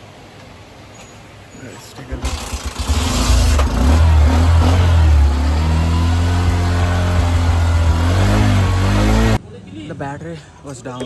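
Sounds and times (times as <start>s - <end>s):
motorcycle engine running: 2.2s - 9.4s.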